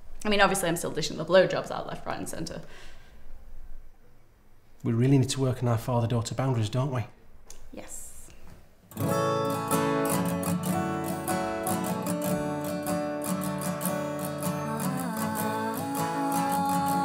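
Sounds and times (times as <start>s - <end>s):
strummed acoustic guitar: 8.9s - 17.0s.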